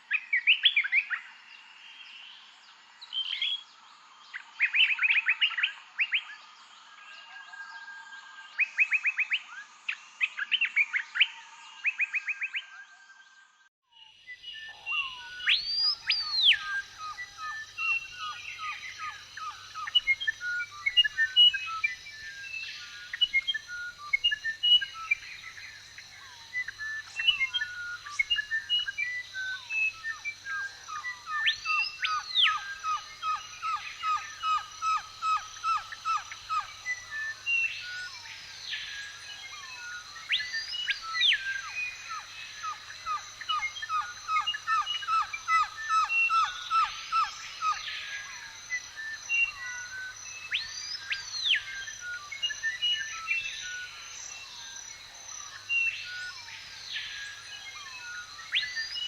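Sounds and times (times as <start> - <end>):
birds chirping and singing: 14.4 - 59.0.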